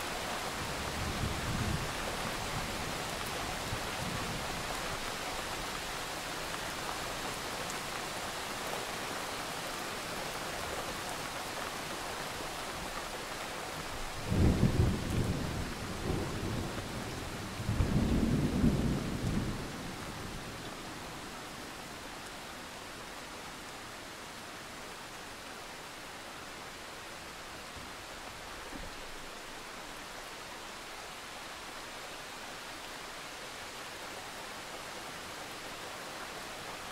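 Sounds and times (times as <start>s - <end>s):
steady rain-like hiss: 0.0s - 36.9s.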